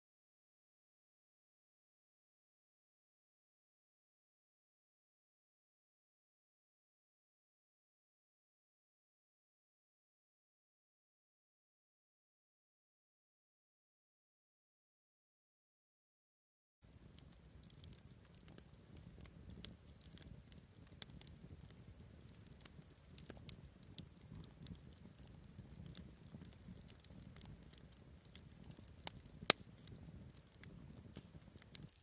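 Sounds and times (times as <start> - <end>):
high insect trill: 16.8 - 32.0
soft crackles and clicks: 16.8 - 32.0.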